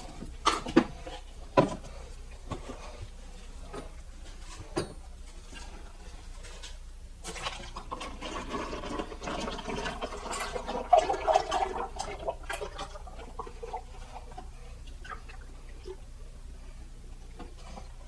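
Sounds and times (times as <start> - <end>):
oil pouring and glugging: 7.2 - 16.2.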